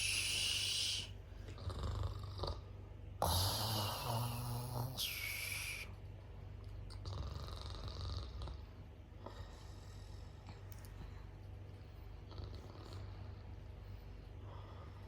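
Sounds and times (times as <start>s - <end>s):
hissing breath: 0.0s - 1.1s
faint breathing: 0.0s - 1.7s, 9.2s - 15.0s
rasping snore: 3.2s - 5.8s.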